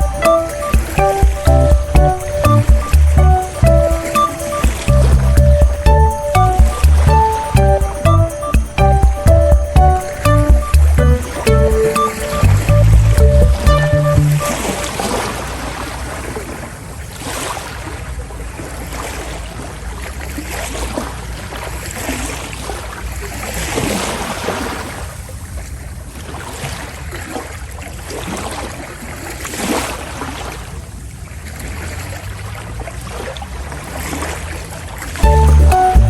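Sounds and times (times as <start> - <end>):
ship low rumble: 0.0 - 15.1
water splashing along hull: 0.0 - 36.0.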